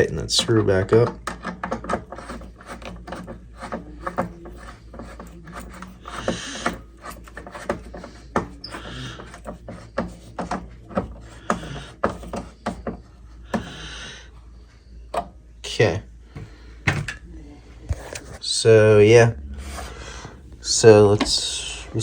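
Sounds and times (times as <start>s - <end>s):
short scraping rasp: 1.6s - 12.8s.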